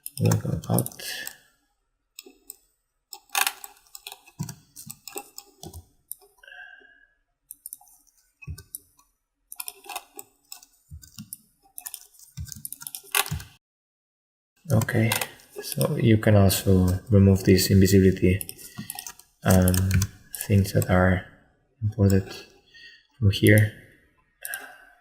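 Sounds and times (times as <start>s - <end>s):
mouse and keyboard clicks: 9.6s - 13.5s.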